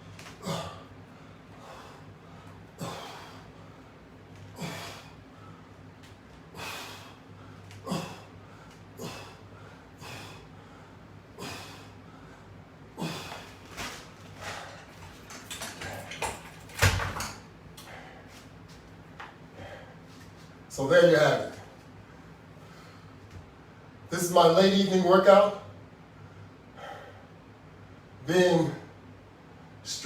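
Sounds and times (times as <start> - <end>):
faint steady hum: 0.0 - 30.0
man exhaling and grunting: 0.4 - 0.9, 4.5 - 5.2, 7.8 - 8.3, 9.0 - 9.4, 11.4 - 12.0, 13.0 - 13.5
man breathing hard: 0.4 - 5.9, 6.5 - 13.6, 14.3 - 15.0, 17.8 - 18.5, 19.5 - 20.2, 26.1 - 27.4.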